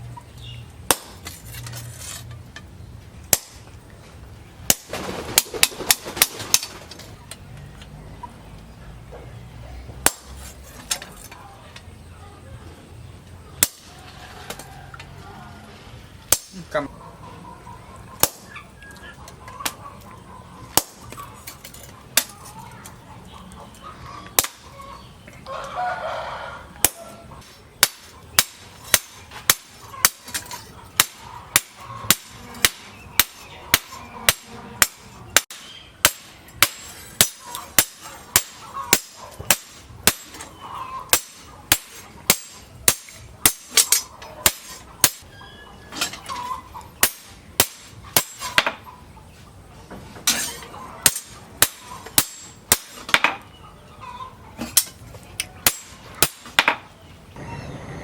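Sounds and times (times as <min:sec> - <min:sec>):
hammer striking steel on anvil: 0:27.8 - 0:40.5, 0:41.1 - 0:45.3, 0:47.0 - 0:48.8, 0:50.2 - 0:53.4, 0:55.6 - 0:56.8.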